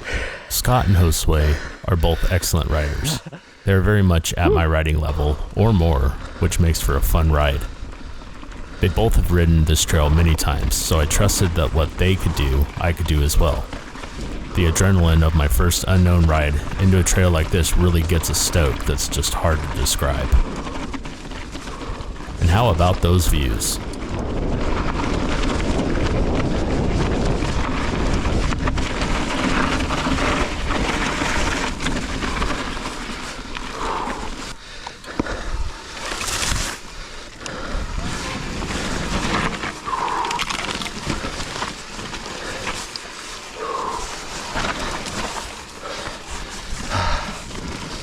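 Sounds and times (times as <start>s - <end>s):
bike rattling: 20.4s - 22.4s, 23.9s - 33.6s, 38.5s - 48.0s.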